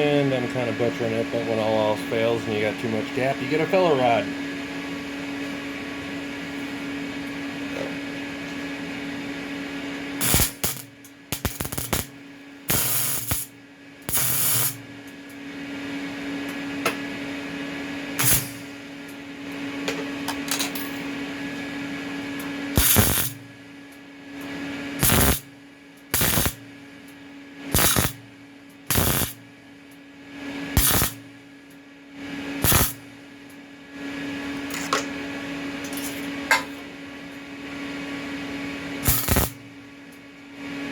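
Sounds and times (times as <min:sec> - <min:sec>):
steady hum: 0:00.0 - 0:40.9
welder arcing in short bursts: 0:10.2 - 0:14.8, 0:18.2 - 0:18.7, 0:22.8 - 0:23.4, 0:25.0 - 0:25.5, 0:26.1 - 0:26.6, 0:27.7 - 0:28.2, 0:28.9 - 0:29.4, 0:30.8 - 0:31.2, 0:32.6 - 0:33.0, 0:39.0 - 0:39.6.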